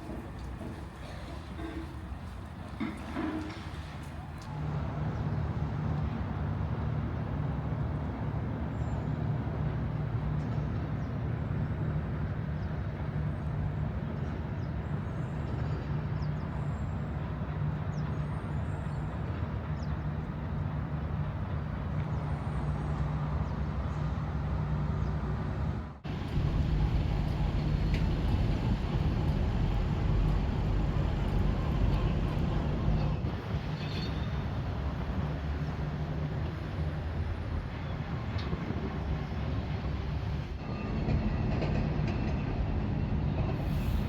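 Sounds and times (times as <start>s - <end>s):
low engine drone: 23.7s - 33.5s.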